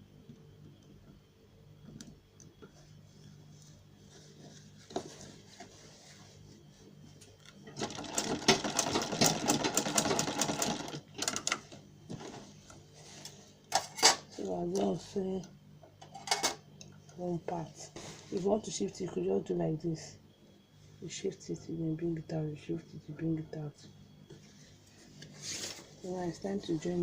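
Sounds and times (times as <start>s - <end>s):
low steady hum: 0.0s - 27.0s
sewing machine stitching: 7.7s - 11.6s.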